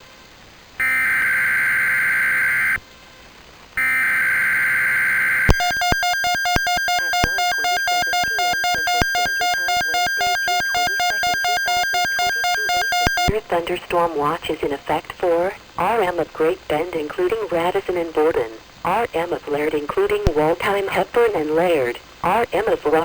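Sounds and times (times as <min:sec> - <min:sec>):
buzzy digital data bursts: 0:00.8 - 0:02.8, 0:03.8 - 0:13.4.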